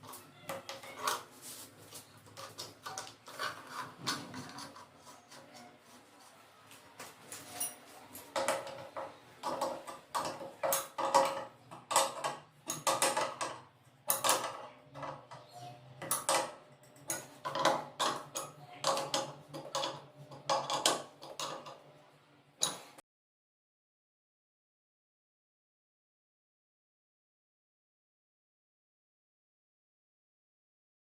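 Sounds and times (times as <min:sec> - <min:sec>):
tools clicking and scraping: 0:00.0 - 0:06.4, 0:07.0 - 0:21.8, 0:22.6 - 0:23.0.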